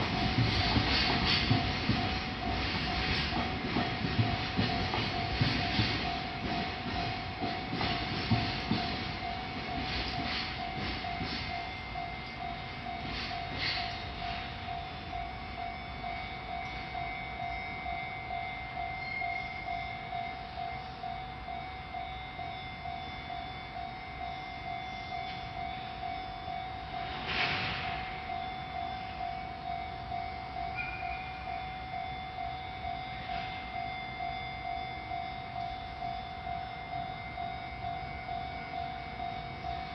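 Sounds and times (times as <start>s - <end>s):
train wheels clicking over rail joints: 0.0s - 15.2s, 27.0s - 28.8s
crossing warning bell ringing: 0.0s - 39.9s.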